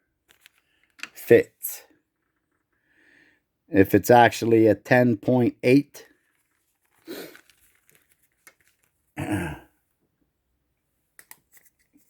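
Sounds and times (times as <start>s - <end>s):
breathy sound: 7.0s - 7.5s, 9.2s - 9.7s
man coughing: 9.2s - 9.7s.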